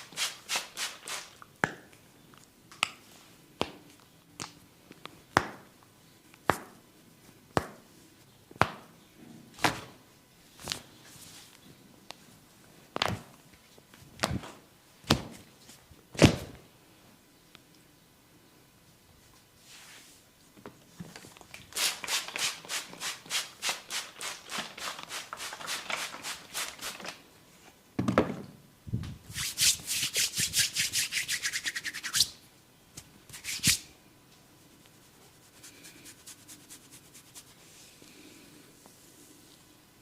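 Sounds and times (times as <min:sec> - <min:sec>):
hands rubbing hair and scalp: 0:00.0 - 0:01.4, 0:21.8 - 0:27.1, 0:29.3 - 0:32.3, 0:33.3 - 0:33.9, 0:34.6 - 0:37.8.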